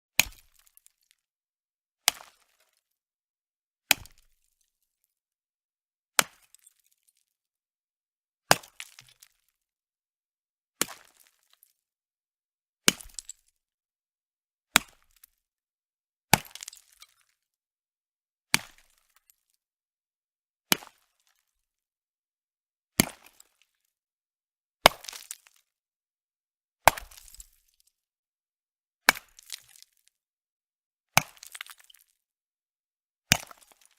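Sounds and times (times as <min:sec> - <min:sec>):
hammer striking ice: 0:00.2 - 0:00.6, 0:02.1 - 0:02.3, 0:03.9 - 0:04.3, 0:08.5 - 0:09.2, 0:12.9 - 0:13.4, 0:14.8 - 0:15.0, 0:16.4 - 0:17.3, 0:24.9 - 0:25.4, 0:26.9 - 0:27.6, 0:29.1 - 0:29.6, 0:31.2 - 0:31.9, 0:33.3 - 0:33.9
ice chips cracking and clinking: 0:16.4 - 0:17.3, 0:25.0 - 0:25.4, 0:29.2 - 0:29.8, 0:31.3 - 0:32.1, 0:33.4 - 0:33.9.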